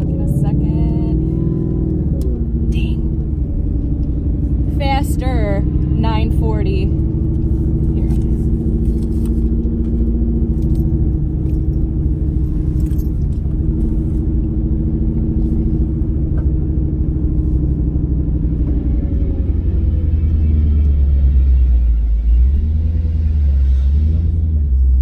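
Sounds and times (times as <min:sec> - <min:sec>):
car engine deep rumble: 0:00.0 - 0:25.0.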